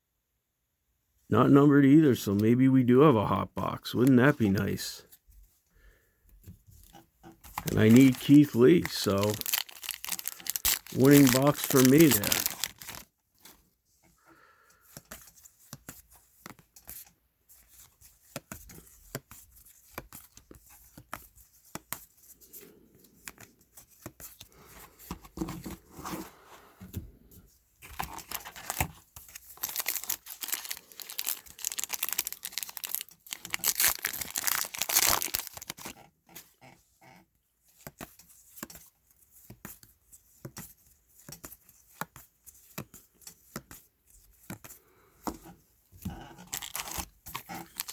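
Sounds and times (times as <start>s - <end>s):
cards rustling: 3.9s - 5.0s, 6.8s - 13.7s, 27.8s - 36.0s, 40.4s - 47.9s
wrappers crinkling and tearing: 7.5s - 13.1s, 28.0s - 36.0s, 46.4s - 47.9s.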